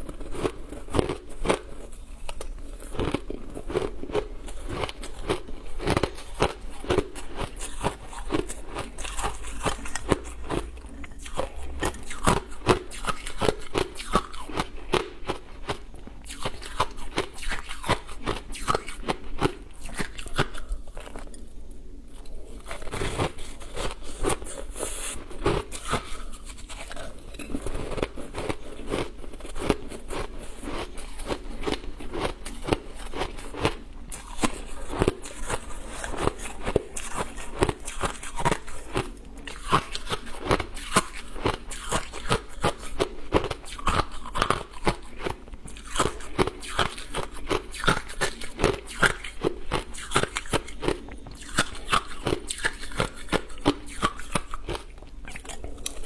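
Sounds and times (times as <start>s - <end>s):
chewing ice crunches: 0.0s - 21.5s, 22.2s - 56.0s.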